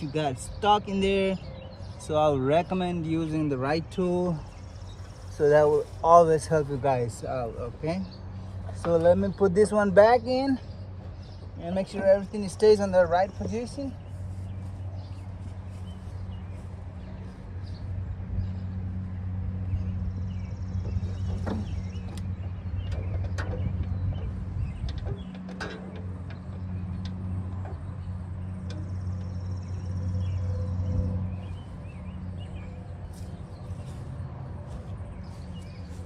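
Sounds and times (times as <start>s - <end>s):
steady low hum: 0.0s - 36.0s
clicks and knocks of parts: 24.8s - 27.8s.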